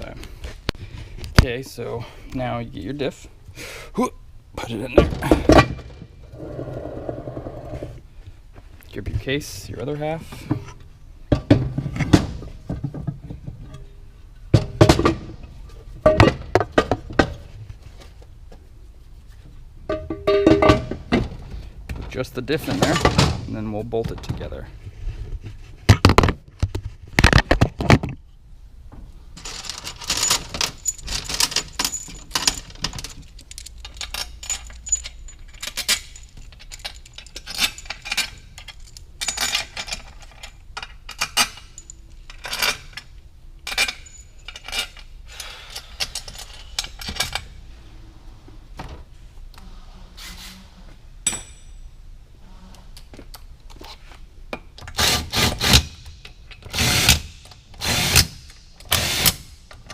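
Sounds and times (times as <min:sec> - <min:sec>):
metal parts clinking: 0:29.4 - 0:47.6.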